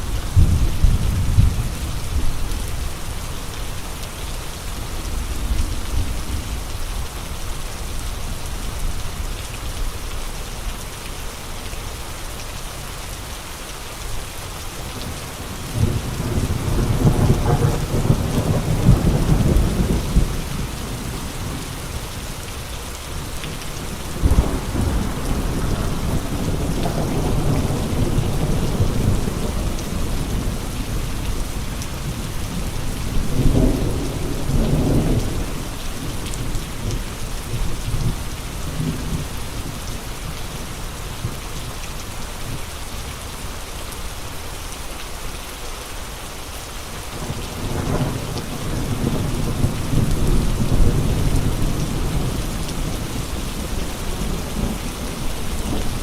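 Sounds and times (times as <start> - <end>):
gusting wind rumble: 0.0 - 3.1, 15.1 - 39.7
rain hissing: 0.0 - 56.0.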